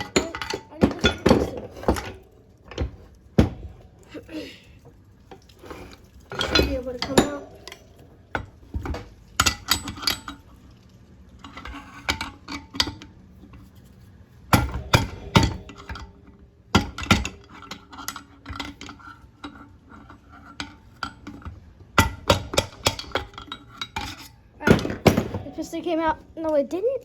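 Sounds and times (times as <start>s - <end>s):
metal tools clinking and clattering: 0.0s - 4.3s, 5.3s - 10.5s.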